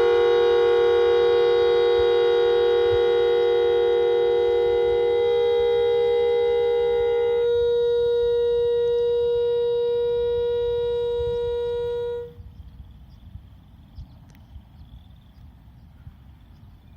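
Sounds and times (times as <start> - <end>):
air horn steady note: 0.0 - 12.5.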